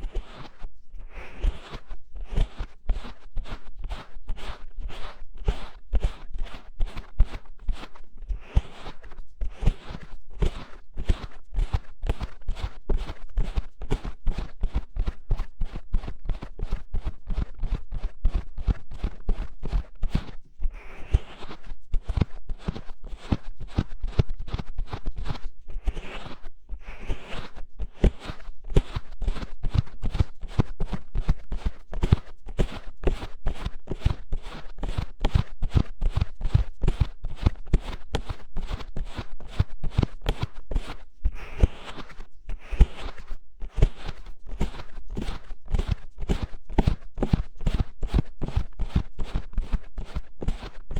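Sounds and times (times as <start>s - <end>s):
muffled pats on microphone: 6.9s - 50.9s
hands brushing microphone: 36.5s - 50.6s.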